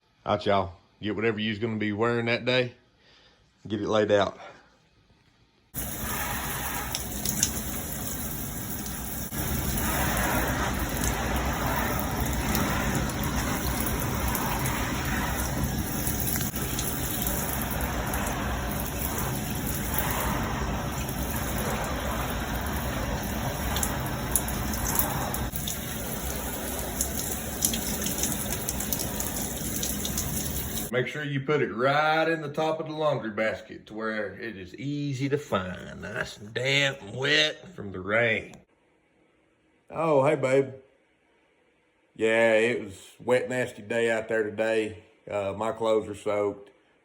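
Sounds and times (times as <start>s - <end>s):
water running and splashing: 5.8s - 30.9s.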